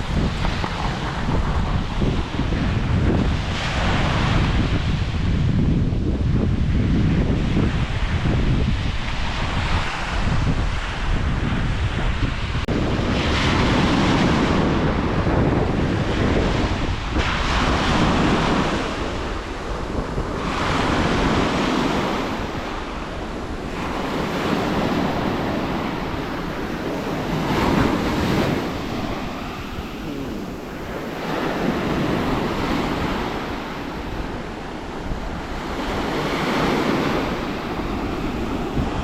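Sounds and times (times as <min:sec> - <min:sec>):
wind buffeting microphone: 0:00.0 - 0:39.0.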